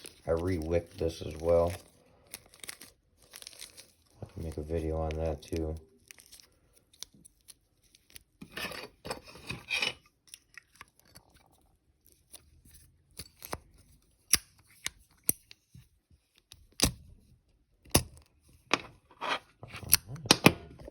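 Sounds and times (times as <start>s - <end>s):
plastic baggie crinkling: 0.0s - 8.0s.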